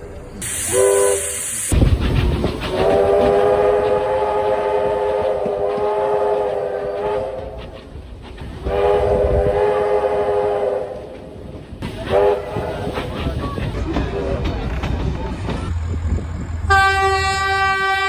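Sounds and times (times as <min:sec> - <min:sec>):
locomotive horn chime: 0:16.7 - 0:18.0.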